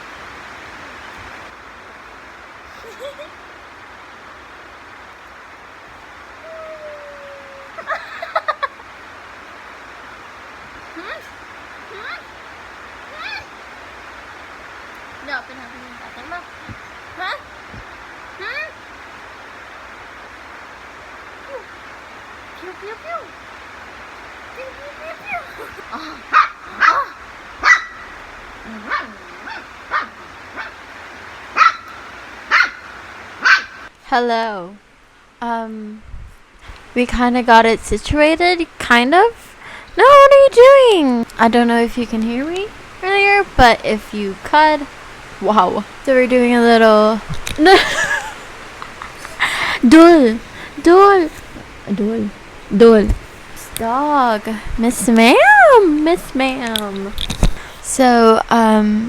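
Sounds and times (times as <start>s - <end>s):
steady hiss: 0.0s - 59.0s
dog yelping: 13.1s - 13.5s, 25.2s - 30.8s, 31.5s - 33.9s
dog whining: 26.3s - 30.7s.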